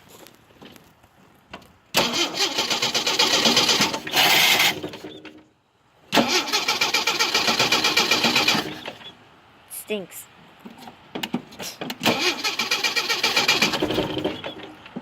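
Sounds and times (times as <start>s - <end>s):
car starter cranking engine: 1.9s - 5.3s, 6.1s - 9.1s, 11.9s - 14.9s.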